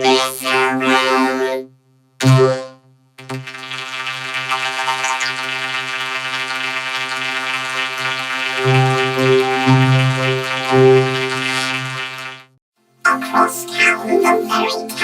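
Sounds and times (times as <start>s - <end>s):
vocoder synthesizer-like tone: 0.0s - 3.4s, 13.1s - 15.0s.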